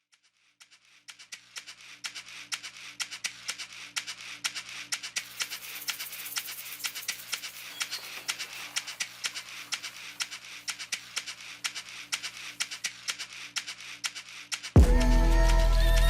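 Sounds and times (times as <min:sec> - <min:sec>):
rapid sharp clicks: 0:00.1 - 0:14.8.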